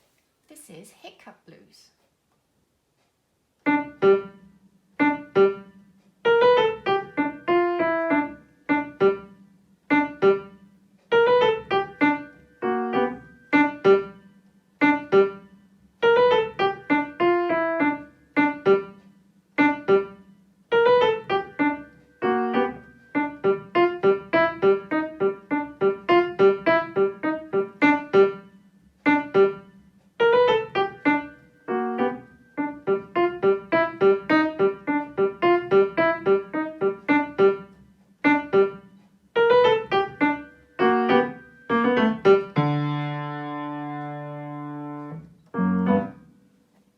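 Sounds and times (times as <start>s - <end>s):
piano playing blues: 3.6s - 9.3s, 9.9s - 14.2s, 14.8s - 19.0s, 19.6s - 46.4s.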